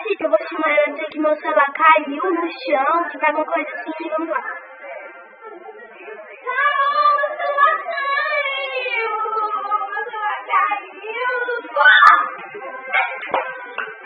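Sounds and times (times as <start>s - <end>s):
girl singing wavering notes: 6.4s - 12.3s.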